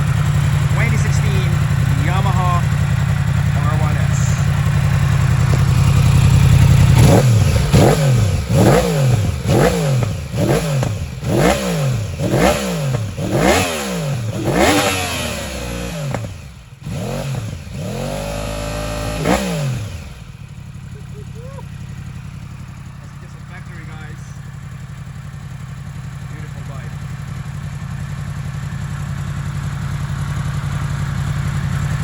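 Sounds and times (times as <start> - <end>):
motorcycle engine revving: 0.0 - 32.0.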